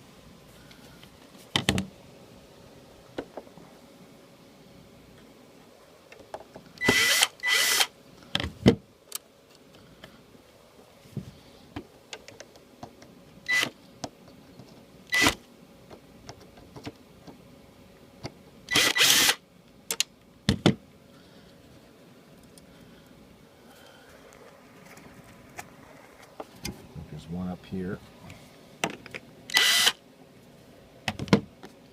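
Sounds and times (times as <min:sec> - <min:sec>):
cordless drill running: 0:06.8 - 0:07.9, 0:18.7 - 0:19.4, 0:29.5 - 0:30.0
small clicks and knocks: 0:11.8 - 0:13.1.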